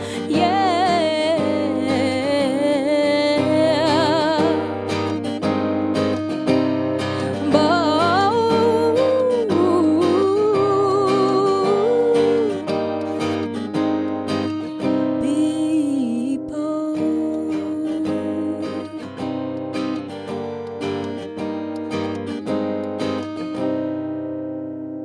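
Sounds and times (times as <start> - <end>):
woman singing wordless runs: 0.0 - 5.1, 7.2 - 12.8, 15.1 - 19.2
strummed acoustic guitar: 0.0 - 25.0.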